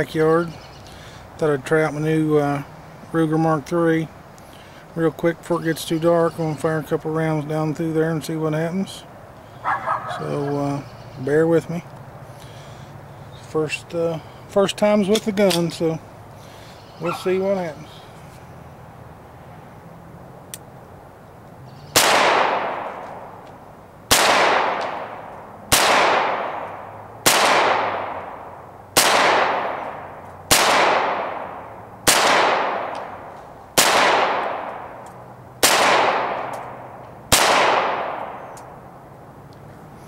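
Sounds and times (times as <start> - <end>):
pistol shots with echo: 22.0 - 23.2, 24.1 - 35.0, 35.6 - 38.6.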